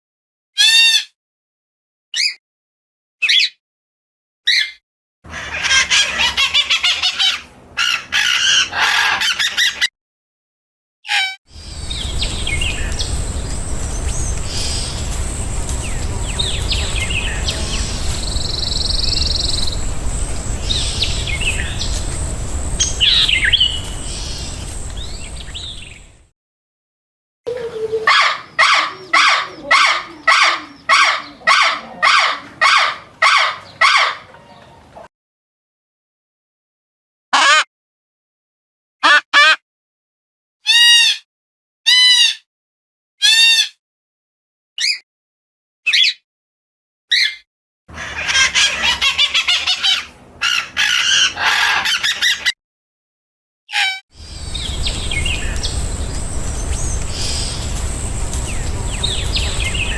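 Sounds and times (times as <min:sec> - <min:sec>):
birds chirping and calling: 0:04.5 - 0:09.9, 0:11.1 - 0:26.2, 0:27.5 - 0:35.0, 0:47.1 - 0:52.5, 0:53.8 - 0:59.9
outdoor background noise: 0:05.3 - 0:09.8, 0:11.5 - 0:26.3, 0:27.5 - 0:35.1, 0:47.9 - 0:52.5, 0:54.2 - 0:59.9.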